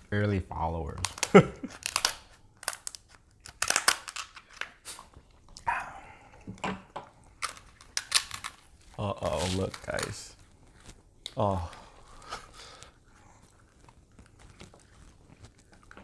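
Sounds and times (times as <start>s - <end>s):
crab shells cracking: 0.9s - 4.8s, 7.3s - 10.3s.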